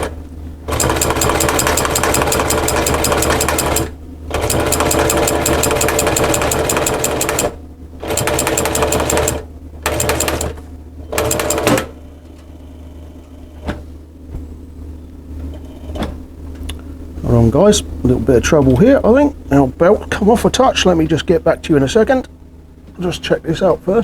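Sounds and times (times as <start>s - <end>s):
steady low hum: 0.0s - 24.0s
sewing machine stitching: 0.7s - 11.9s.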